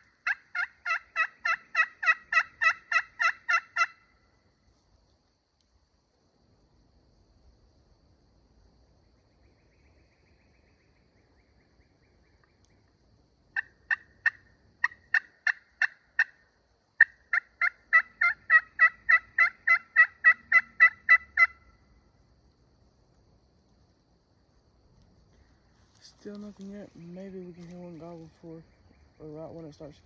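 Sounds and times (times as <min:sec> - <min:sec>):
turkey yelping: 0:00.2 - 0:04.0, 0:13.6 - 0:16.4, 0:17.0 - 0:21.8.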